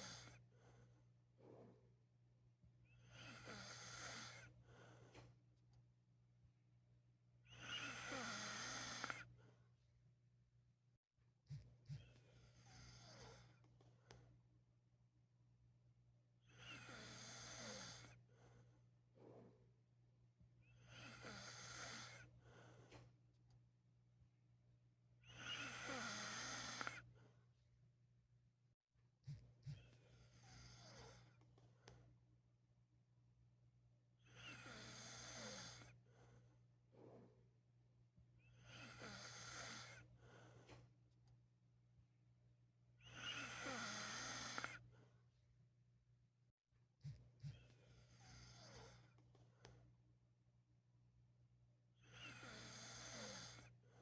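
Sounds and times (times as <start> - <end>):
man snoring: 7.7 - 9.2, 25.5 - 27.0, 34.5 - 35.9, 43.2 - 44.8, 52.2 - 53.6.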